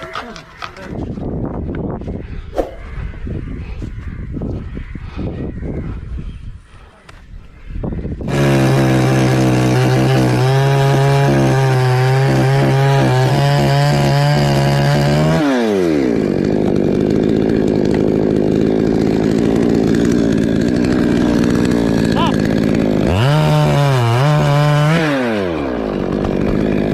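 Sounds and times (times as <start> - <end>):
chainsaw running: 8.2 - 26.9.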